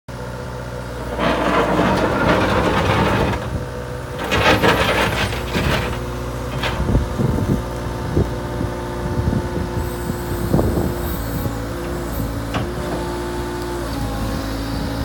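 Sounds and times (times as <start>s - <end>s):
diesel engine running: 0.1s - 15.0s.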